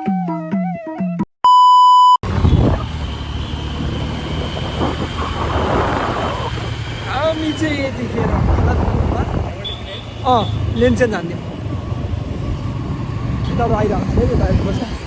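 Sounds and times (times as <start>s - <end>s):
motorcycle engine running: 2.2s - 9.8s
wind noise on microphone: 2.2s - 10.8s, 11.4s - 15.0s.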